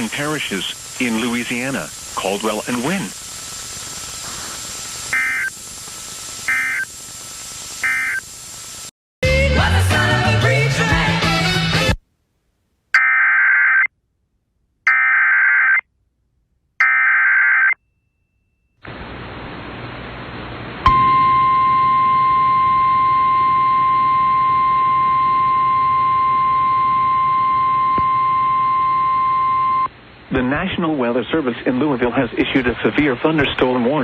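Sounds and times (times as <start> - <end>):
radio static hiss: 0.0 - 8.9, 18.8 - 20.8, 29.8 - 34.0
data burst tones: 5.0 - 5.7, 6.4 - 7.0, 7.7 - 8.3, 13.0 - 13.9, 14.9 - 15.8, 16.8 - 17.8
steady warning alarm tone: 5.1 - 5.6, 6.5 - 6.9, 7.8 - 8.3, 14.9 - 15.8, 16.8 - 17.8, 20.9 - 29.9.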